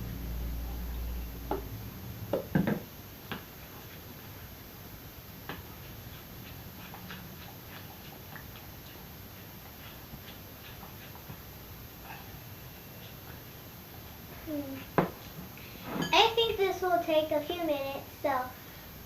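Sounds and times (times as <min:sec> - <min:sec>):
low hum: 0:00.0 - 0:03.3.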